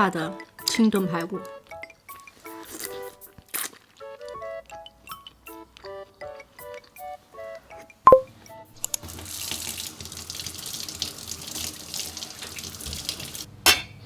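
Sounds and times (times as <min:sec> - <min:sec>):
tap running water into sink: 0:09.0 - 0:13.5.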